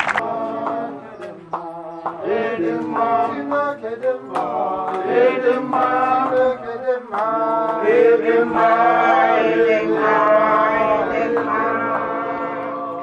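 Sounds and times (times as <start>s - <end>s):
person singing chant-like song: 0.0s - 13.0s.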